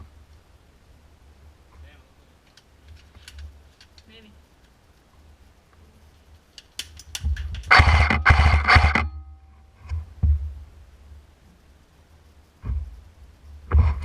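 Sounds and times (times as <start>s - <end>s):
airsoft gun clicks: 6.5s - 7.7s
dull thumps: 9.8s - 10.7s, 12.6s - 14.0s.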